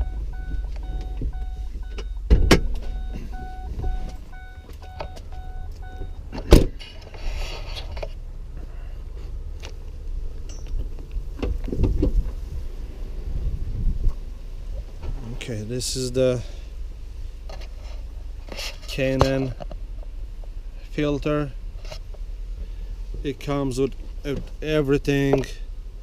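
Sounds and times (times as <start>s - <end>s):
car warning chime beeping: 0.0s - 6.4s
car door slamming: 0.0s - 6.8s, 11.3s - 12.4s
low steady rumble: 0.0s - 26.0s
thump: 2.2s - 3.9s, 6.3s - 6.9s.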